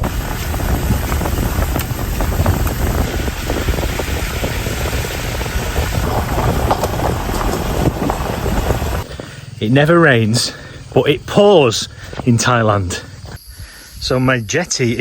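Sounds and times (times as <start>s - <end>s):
wind buffeting microphone: 0.0s - 9.2s
rushing hiss with crackles: 0.0s - 9.6s.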